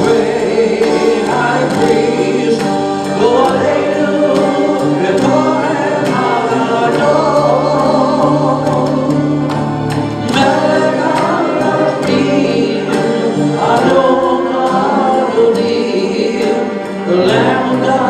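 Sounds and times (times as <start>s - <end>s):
congregation singing: 0.0s - 18.0s
instrumental accompaniment: 0.0s - 18.0s.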